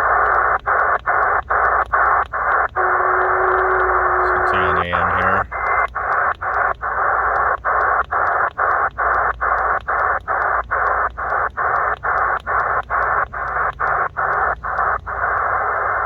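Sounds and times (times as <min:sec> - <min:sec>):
pulsing radio hiss: 0:02.8 - 0:06.1.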